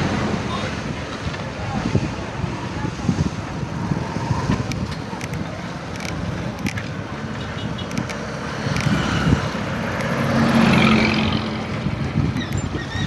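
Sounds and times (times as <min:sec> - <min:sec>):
passing vehicle engine: 0:00.0 - 0:13.0
vehicle engine and road noise: 0:00.0 - 0:13.0.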